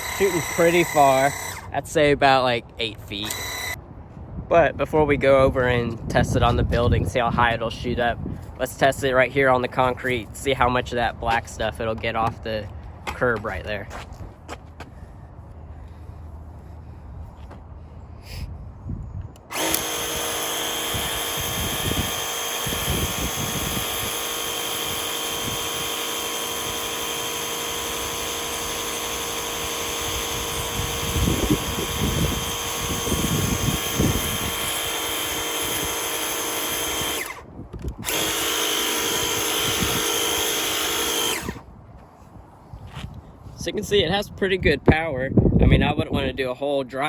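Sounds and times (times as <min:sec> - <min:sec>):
electric pump motor whining: 0:00.0 - 0:01.8, 0:03.2 - 0:03.8, 0:19.4 - 0:41.6.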